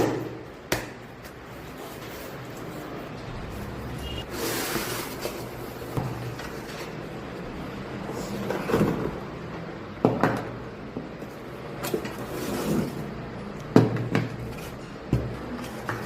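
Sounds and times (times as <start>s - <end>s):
packaging scraping and sliding: 4.2s - 5.9s.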